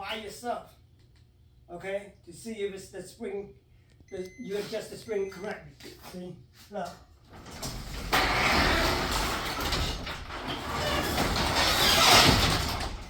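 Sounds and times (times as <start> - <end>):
garage door rollers rumbling: 7.2 - 13.0.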